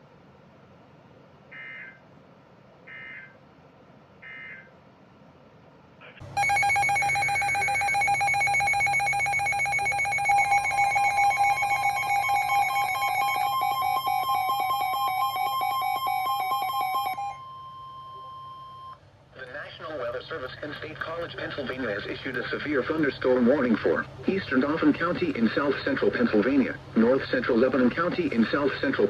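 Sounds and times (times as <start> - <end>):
digital data bursts: 6.3 - 17.3
pulsing electronic attention tone: 6.3 - 19.0.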